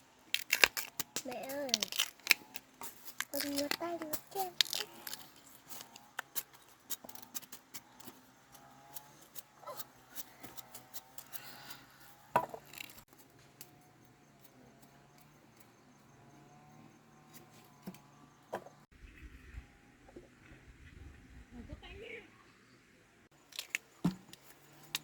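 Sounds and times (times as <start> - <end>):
handling clicks and rustles: 0.0 - 18.9, 23.4 - 25.0.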